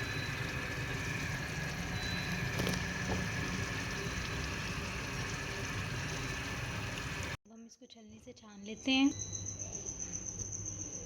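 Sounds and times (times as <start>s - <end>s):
pan boiling and bubbling: 0.0s - 7.4s.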